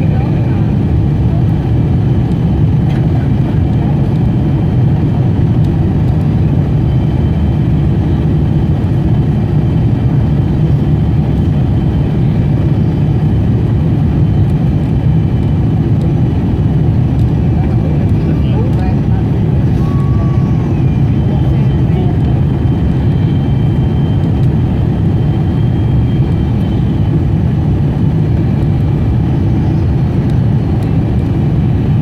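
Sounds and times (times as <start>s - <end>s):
airliner cabin engine rumble: 0.0s - 32.0s
faint steady high tones: 19.7s - 24.2s.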